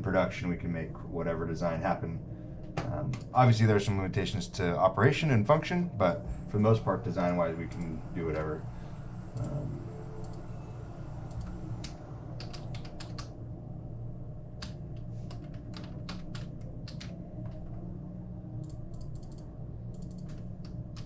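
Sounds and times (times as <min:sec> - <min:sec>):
steady low hum: 0:00.0 - 0:21.0
keyboard typing clicks: 0:11.3 - 0:13.3, 0:18.6 - 0:21.0.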